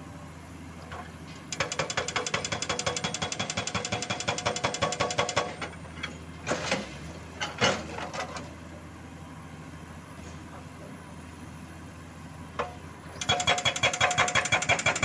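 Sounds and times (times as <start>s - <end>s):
hydraulic breaker hammering rock: 1.5s - 5.7s, 13.2s - 15.0s.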